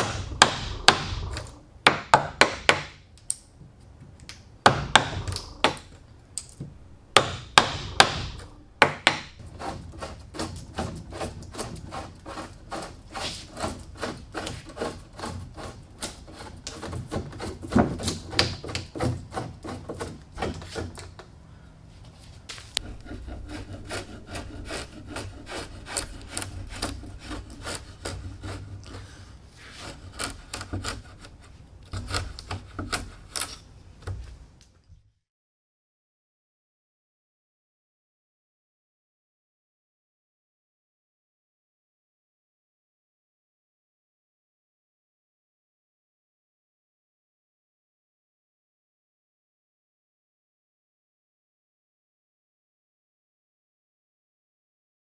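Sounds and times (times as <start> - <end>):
sharp strikes on wood: 0.0 - 3.0, 4.6 - 5.9, 7.1 - 20.8
sawing strokes on wood: 9.4 - 20.8, 22.8 - 33.6.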